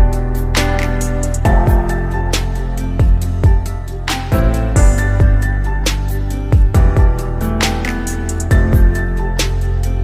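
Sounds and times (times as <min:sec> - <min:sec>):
held chords: 0:00.0 - 0:07.5
drum beat: 0:01.4 - 0:02.3.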